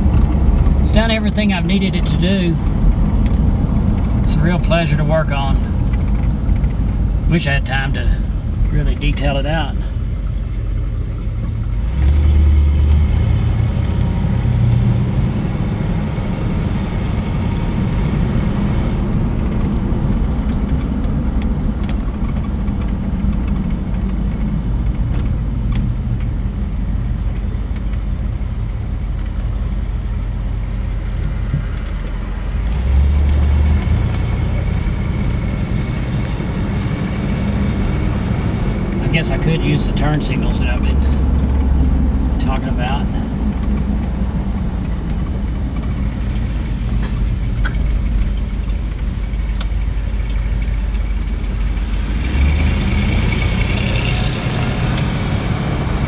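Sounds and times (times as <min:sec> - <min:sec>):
car engine running: 0:00.0 - 0:56.0
road rumble: 0:00.0 - 0:56.0
man talking: 0:00.8 - 0:02.6, 0:04.2 - 0:05.7, 0:07.3 - 0:09.9, 0:39.0 - 0:41.2, 0:42.4 - 0:43.3.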